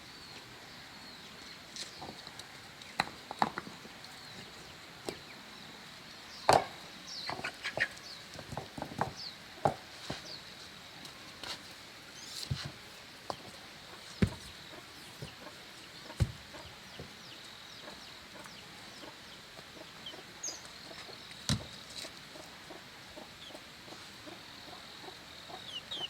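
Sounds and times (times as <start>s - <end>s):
sharp knocks and taps: 14.2s - 14.5s.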